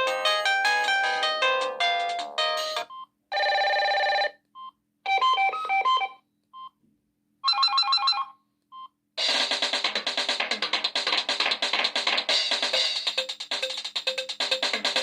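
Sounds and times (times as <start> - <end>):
phone melody: 0.0 - 4.3, 5.1 - 6.2.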